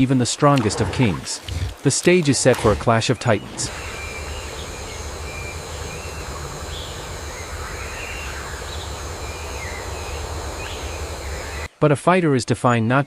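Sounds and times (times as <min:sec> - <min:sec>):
steady low rumble: 0:02.6 - 0:11.7
faint high chirps: 0:03.6 - 0:11.7.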